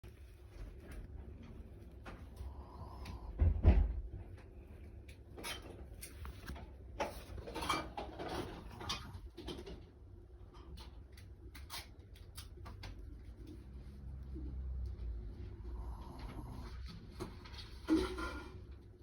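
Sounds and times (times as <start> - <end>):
small dog snoring: 15.6 - 17.1.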